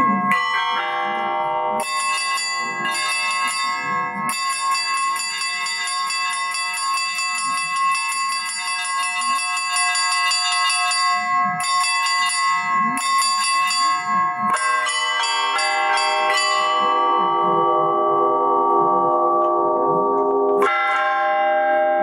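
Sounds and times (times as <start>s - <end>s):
large bells ringing: 0.0s - 22.0s
small high bells striking: 0.0s - 22.0s.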